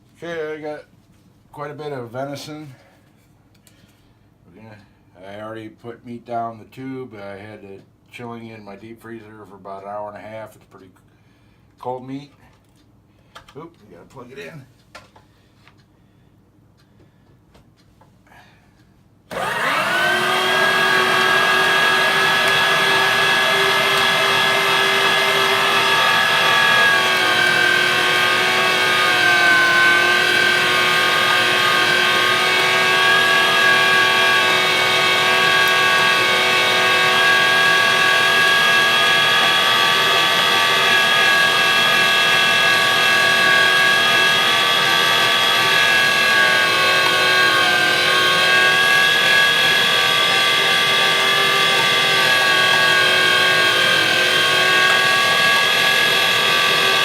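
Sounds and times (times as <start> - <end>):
electric meat grinder whining: 19.3 - 57.0.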